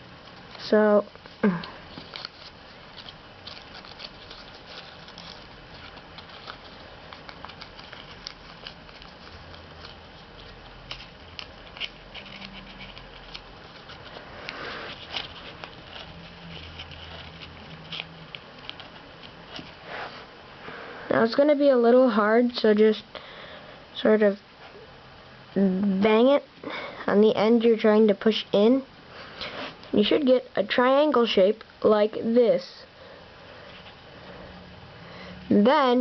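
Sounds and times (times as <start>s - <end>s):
paper rustling and crinkling: 0.2s - 19.8s
sharp paper clicks: 1.2s - 14.2s.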